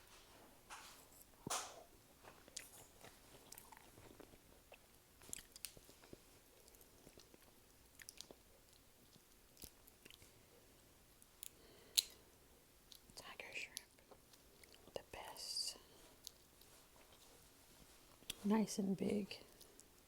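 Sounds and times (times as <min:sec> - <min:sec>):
person biting and chewing: 0:02.5 - 0:10.2
wet mouth clicks and smacks: 0:03.5 - 0:10.2.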